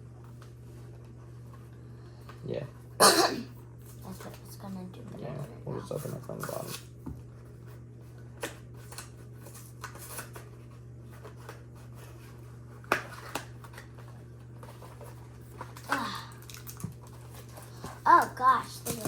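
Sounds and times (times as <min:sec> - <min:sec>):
card packaging clicks and rustles: 0:08.3 - 0:19.0.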